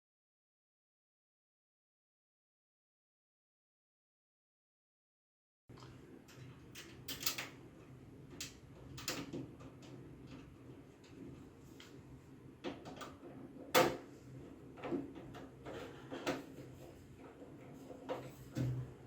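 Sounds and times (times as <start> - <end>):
computer case parts clicking: 6.8 - 7.6, 8.4 - 10.5.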